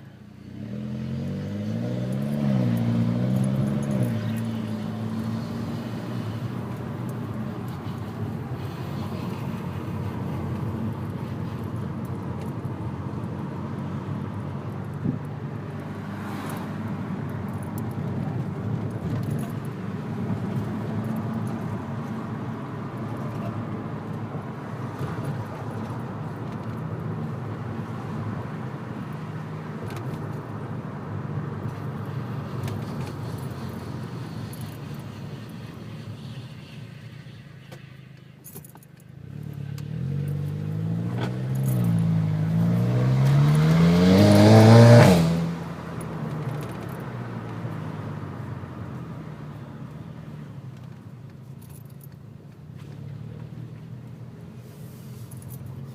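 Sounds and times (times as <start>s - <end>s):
car engine revving: 39.8s - 45.8s.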